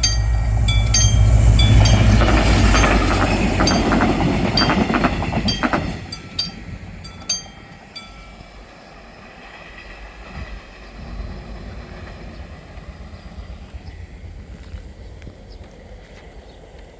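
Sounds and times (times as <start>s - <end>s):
crossing warning bell: 0.0s - 9.0s
low rumble of train: 0.0s - 16.9s
train wheel noise: 0.0s - 16.9s.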